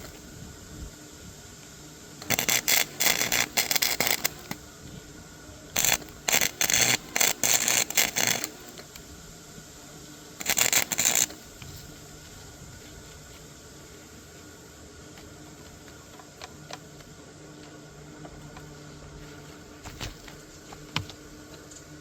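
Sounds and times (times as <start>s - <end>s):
rough scraping on metal: 2.2s - 4.6s, 5.8s - 8.9s, 10.4s - 11.4s.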